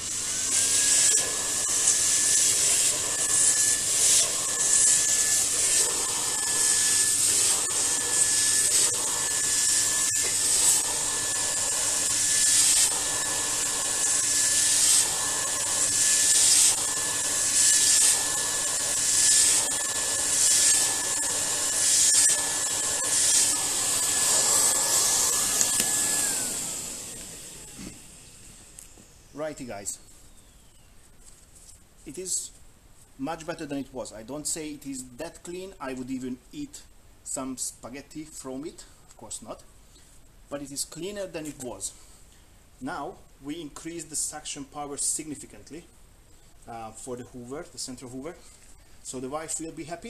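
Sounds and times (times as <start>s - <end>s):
vacuum motor whine and hum: 0.0s - 29.1s.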